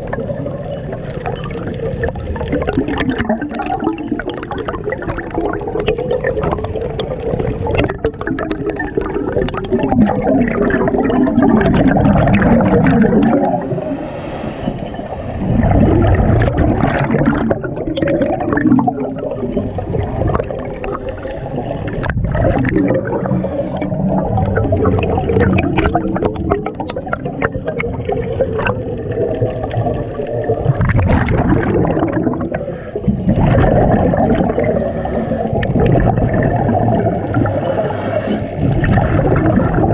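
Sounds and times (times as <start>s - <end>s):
rumbling exhaust bubbles underwater: 0.0s - 39.9s
scuba regulator breaths: 13.4s - 15.5s, 23.1s - 24.2s, 32.5s - 33.4s, 34.7s - 35.8s, 37.3s - 38.8s.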